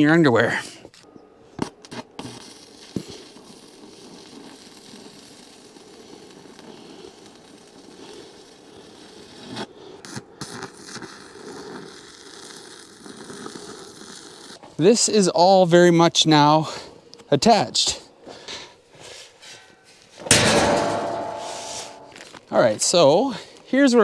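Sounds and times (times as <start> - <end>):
welding arc crackling: 2.2 - 9.4.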